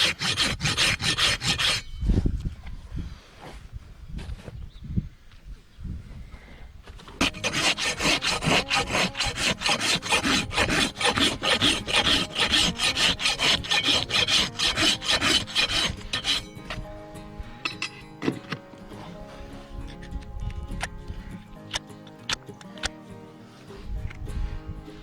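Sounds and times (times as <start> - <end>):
hoof rasp scraping: 0.0 - 2.7, 6.8 - 25.0
background music: 7.2 - 25.0.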